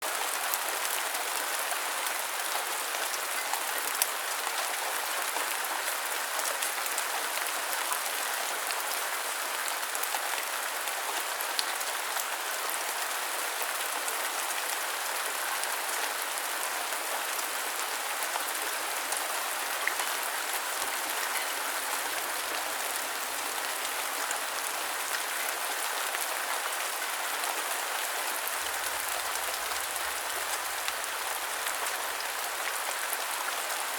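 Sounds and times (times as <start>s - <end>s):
steady rain: 0.0s - 33.9s.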